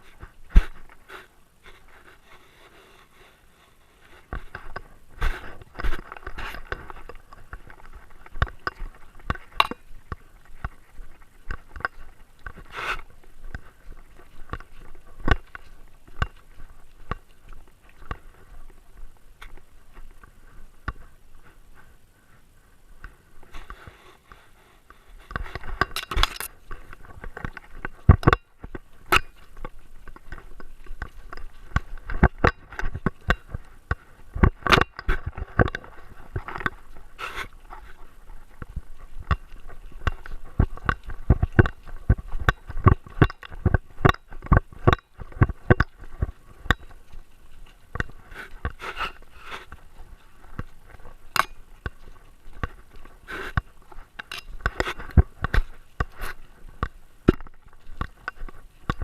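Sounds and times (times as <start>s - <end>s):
clicks crunches and scrapes: 0.0s - 18.8s, 23.0s - 59.0s.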